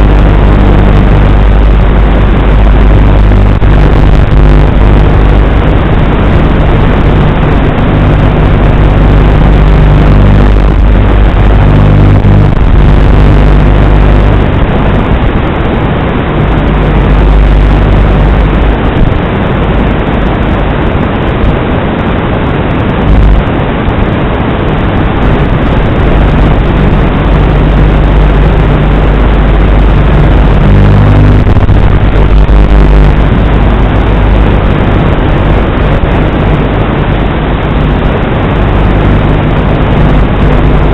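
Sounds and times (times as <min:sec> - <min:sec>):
low hum: 0:00.0 - 0:40.9.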